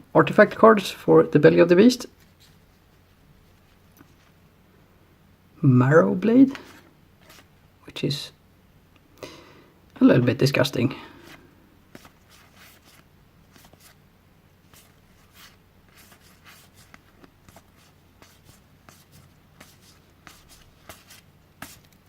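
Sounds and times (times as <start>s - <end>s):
low steady hum: 0.0s - 22.0s
cards rustling and clicking: 11.2s - 14.0s, 14.7s - 22.0s.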